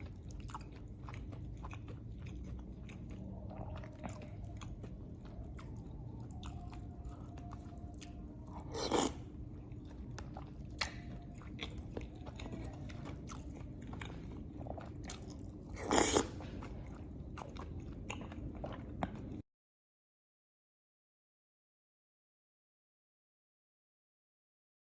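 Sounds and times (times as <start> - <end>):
person chewing: 0.0 - 19.4.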